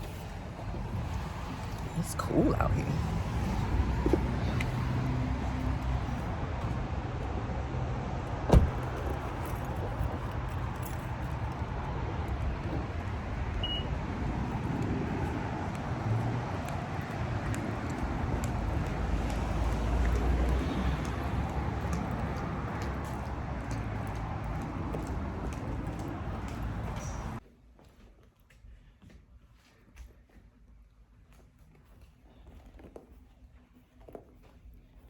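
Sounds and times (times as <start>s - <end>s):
road traffic rumble: 0.0s - 27.4s.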